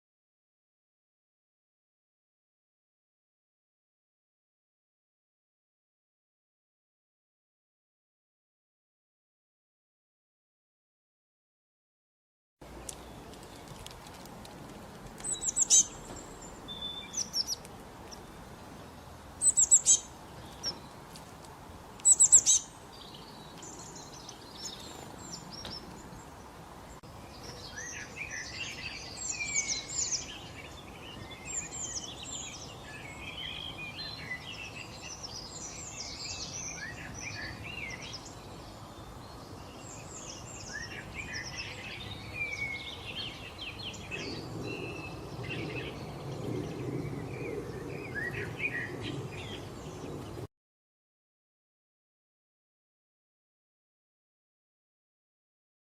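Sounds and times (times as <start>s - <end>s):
birds chirping: 12.6s - 50.5s.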